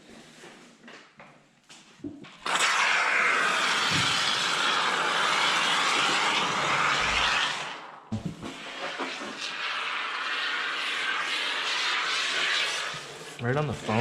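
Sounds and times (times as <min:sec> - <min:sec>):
aerosol spray can hissing: 0:08.4 - 0:13.4.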